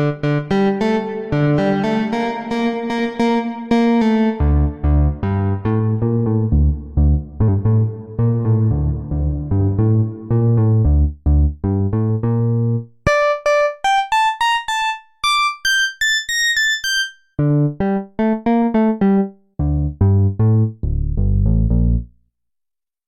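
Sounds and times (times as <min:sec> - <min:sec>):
synthesizer notes: 0:12.3 - 0:21.8.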